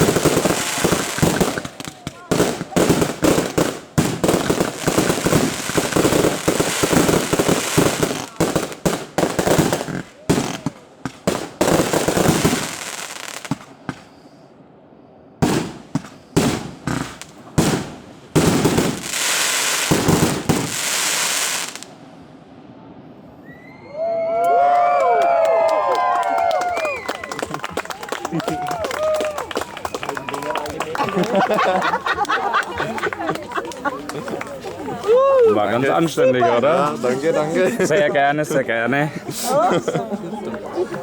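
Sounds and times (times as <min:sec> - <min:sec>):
fireworks bursts and bangs: 0:00.0 - 0:14.2, 0:15.4 - 0:21.9
fireworks crackling hissing showers: 0:00.0 - 0:14.4, 0:15.6 - 0:22.0.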